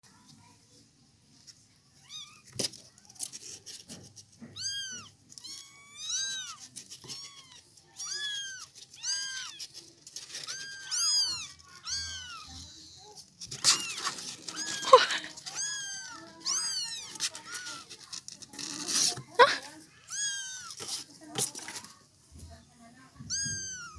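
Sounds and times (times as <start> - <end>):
kittens meowing: 4.4 - 9.7, 10.4 - 13.0, 13.6 - 17.9, 20.0 - 20.8, 23.3 - 23.9
rustling scuffle: 6.2 - 19.8, 20.6 - 22.6.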